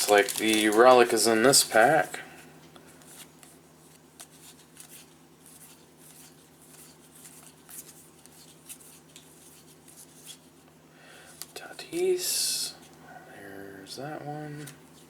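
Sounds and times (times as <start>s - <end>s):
trading cards rustling and sliding: 0.0s - 2.0s, 2.9s - 10.5s.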